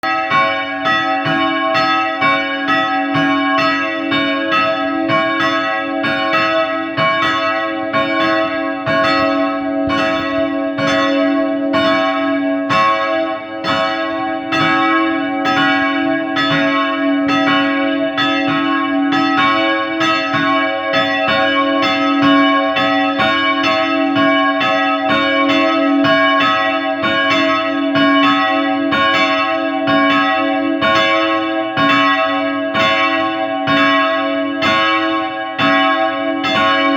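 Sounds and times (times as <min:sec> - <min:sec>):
church bells pealing: 0:00.0 - 0:36.9.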